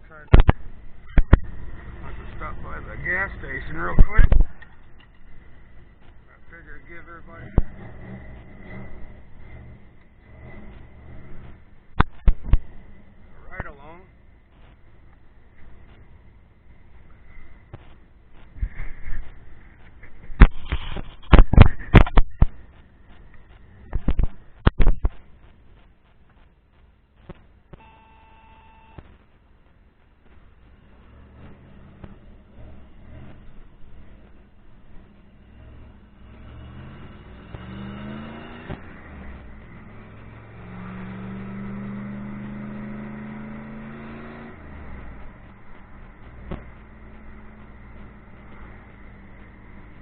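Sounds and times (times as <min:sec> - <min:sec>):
car engine under throttle: 0:00.0 - 0:26.4, 0:27.2 - 0:50.0
road noise: 0:00.0 - 0:50.0
electronic beep tone: 0:27.8 - 0:29.0.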